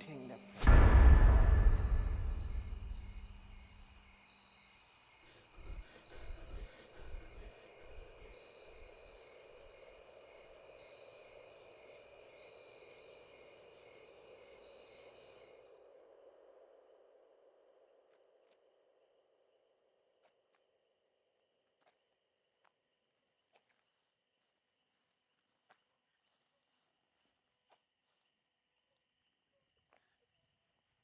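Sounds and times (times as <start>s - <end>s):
night insects chirping: 0.0s - 25.8s
soft low thuds: 0.6s - 3.7s.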